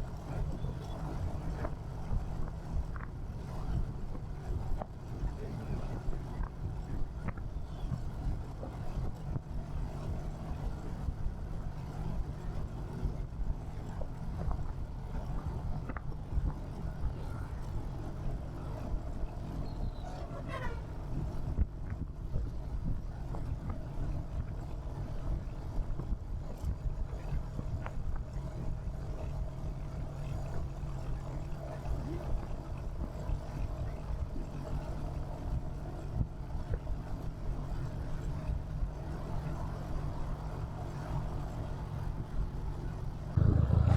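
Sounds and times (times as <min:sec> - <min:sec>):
road and traffic noise: 0:34.7 - 0:43.9
motorcycle engine thumping: 0:43.4 - 0:43.9.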